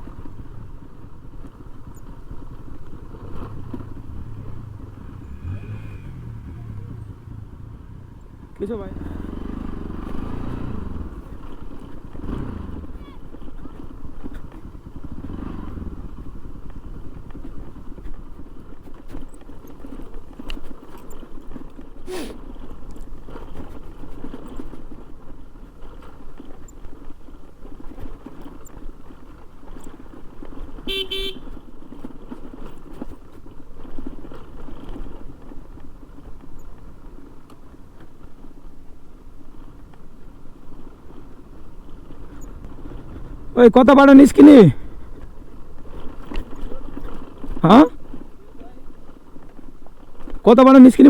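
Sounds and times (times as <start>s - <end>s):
motorcycle engine running: 0.0s - 51.0s
road and wind noise: 0.0s - 51.0s
short horn honk: 30.9s - 31.5s.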